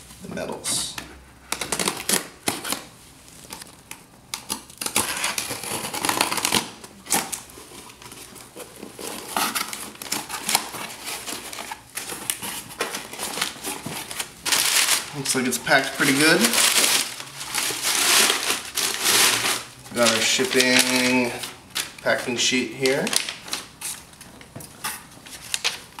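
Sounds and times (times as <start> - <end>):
cardboard rustling and crinkling: 4.9 - 26.0.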